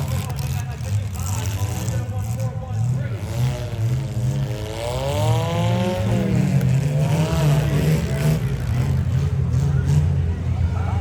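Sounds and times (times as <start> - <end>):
car engines revving: 0.0 - 11.0.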